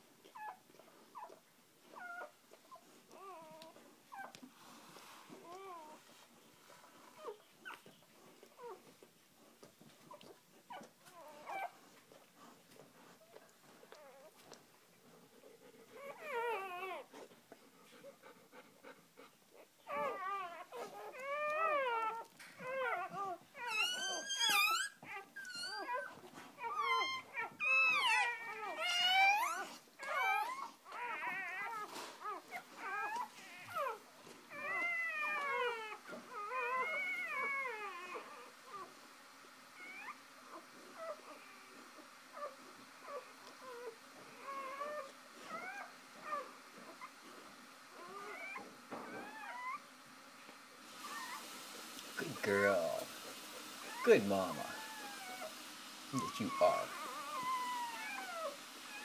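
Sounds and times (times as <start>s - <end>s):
puppies squealing and whimpering: 1.2s - 4.4s, 10.1s - 11.8s, 15.9s - 17.1s, 19.6s - 39.0s, 39.7s - 49.9s, 51.0s - 51.5s, 52.2s - 59.0s.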